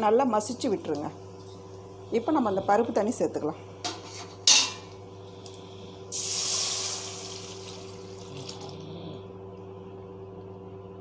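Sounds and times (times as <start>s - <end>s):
liquid splashing into hot oil: 6.1s - 8.6s.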